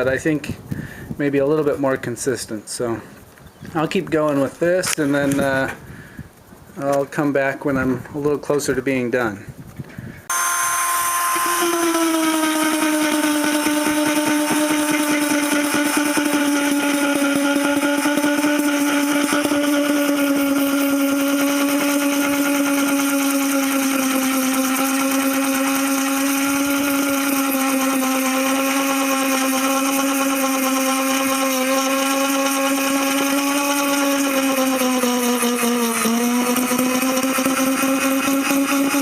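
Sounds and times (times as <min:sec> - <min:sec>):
rotary tool sanding: 0:10.3 - 0:39.0.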